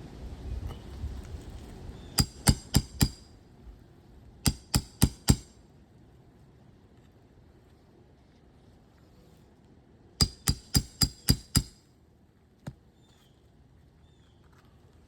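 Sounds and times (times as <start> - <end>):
light wind noise: 0.0 - 10.2
sharp metallic taps: 2.2 - 3.3, 4.5 - 5.6, 10.2 - 11.8.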